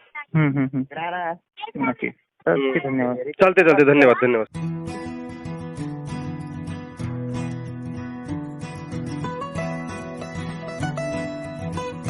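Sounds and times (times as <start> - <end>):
plucked string music: 3.7 - 12.0.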